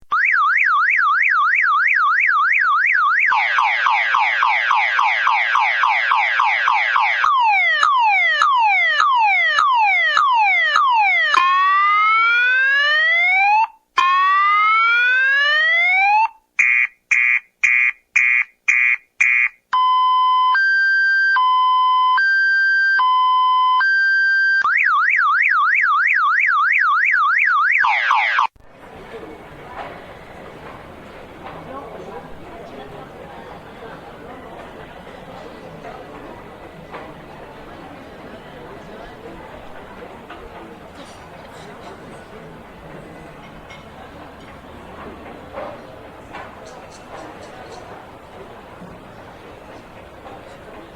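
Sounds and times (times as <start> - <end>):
electronic alarm siren: 0.1 - 28.5.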